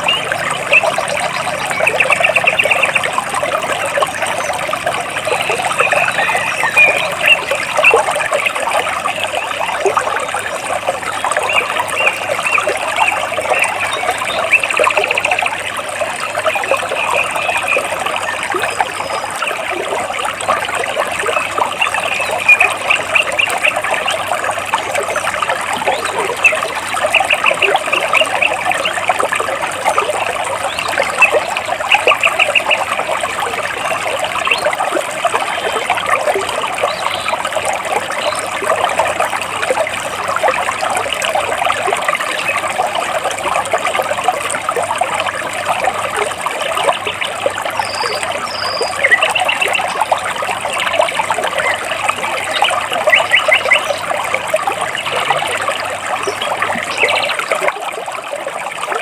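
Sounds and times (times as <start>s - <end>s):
birds chirping in trills: 0.0s - 9.6s, 11.4s - 15.6s, 29.9s - 33.1s, 47.1s - 50.0s, 50.6s - 54.1s, 56.3s - 57.4s.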